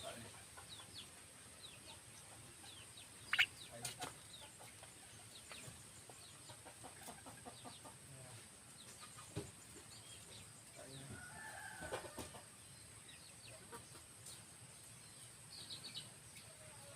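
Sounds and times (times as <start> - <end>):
birds chirping: 0.0 - 11.8.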